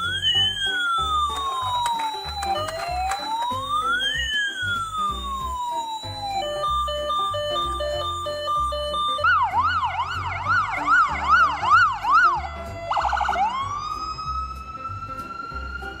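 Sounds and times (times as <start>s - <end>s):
electronic ambulance siren: 0.0s - 16.0s.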